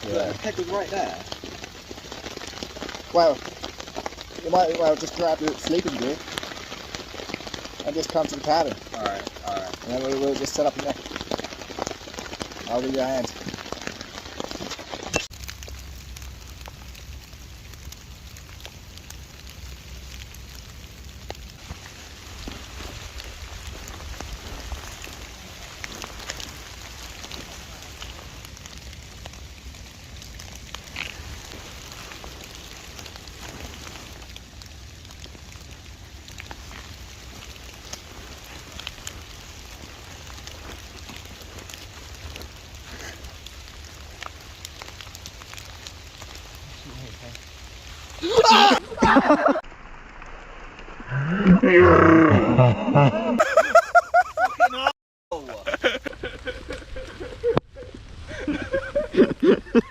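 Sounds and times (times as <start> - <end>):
raindrops ticking close by: 0.0 - 59.9
steady rain falling: 0.0 - 59.9.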